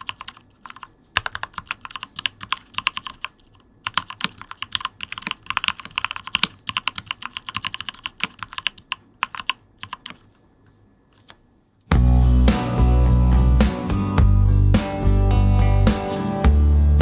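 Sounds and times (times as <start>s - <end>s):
typing on mechanical keyboard: 0.0s - 10.4s
guitar music: 11.9s - 17.0s.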